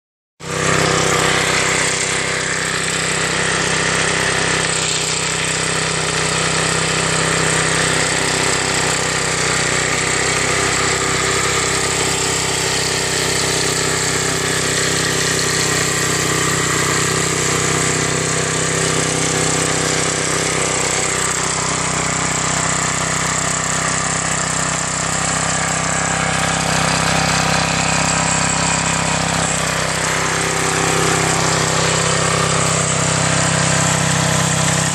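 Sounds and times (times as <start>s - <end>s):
small mower engine running: 0.4s - 34.9s.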